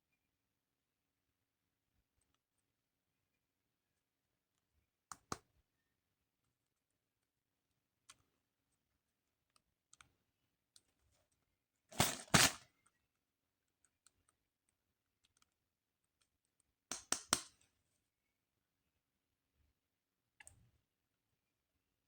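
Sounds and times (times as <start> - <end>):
plastic packaging rustling: 12.0 - 12.6.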